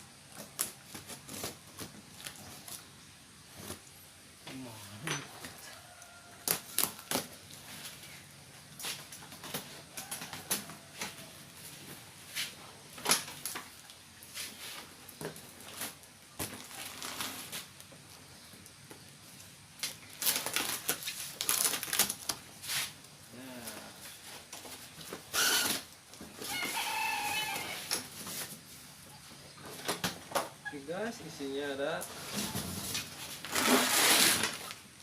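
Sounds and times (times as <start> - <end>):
packaging crinkling and rustling: 14.8 - 17.9, 19.8 - 22.6, 32.3 - 34.9
packaging crackling: 15.8 - 17.8, 19.8 - 22.4.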